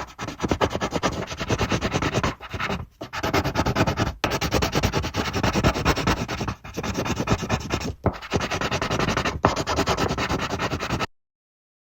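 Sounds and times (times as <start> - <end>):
pencil shading on paper: 0.0 - 11.1.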